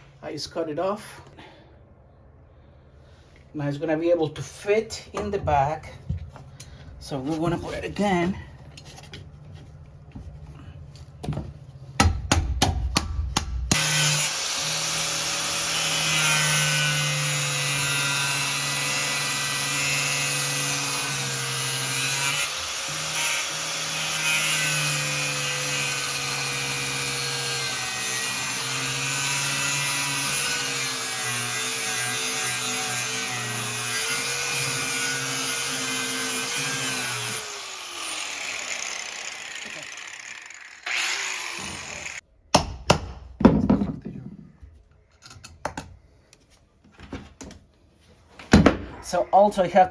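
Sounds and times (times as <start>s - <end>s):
power tool running: 32.7s - 42.2s.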